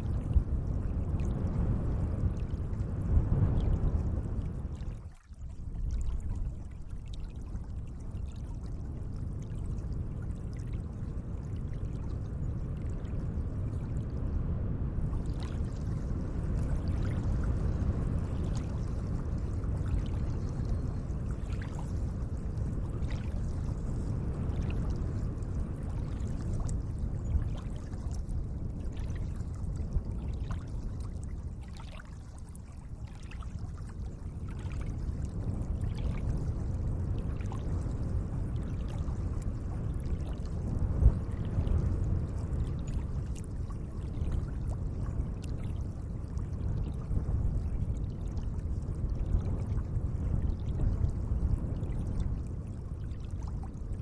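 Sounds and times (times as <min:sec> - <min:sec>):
gentle lake water washing: 0:00.0 - 0:14.3, 0:15.0 - 0:54.0
small water splashes: 0:04.8 - 0:08.8, 0:15.2 - 0:25.0, 0:25.8 - 0:37.8, 0:38.5 - 0:39.1.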